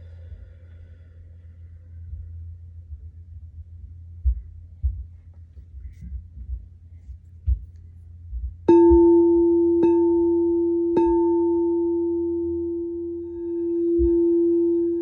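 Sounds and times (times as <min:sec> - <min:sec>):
singing bowl ringing: 0:08.7 - 0:15.0.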